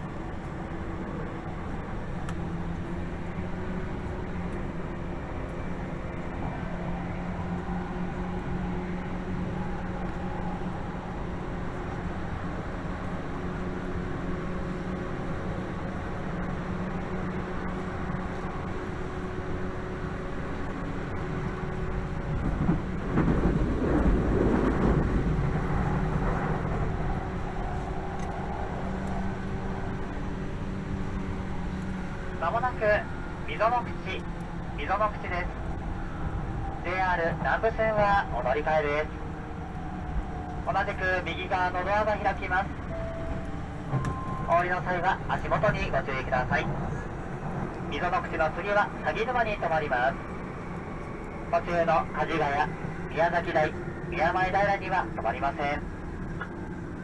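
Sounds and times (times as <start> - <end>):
traction motor hum: 0.0 - 57.0
train wheels rumbling on rail: 0.0 - 57.0
faint clicks: 26.2 - 30.1.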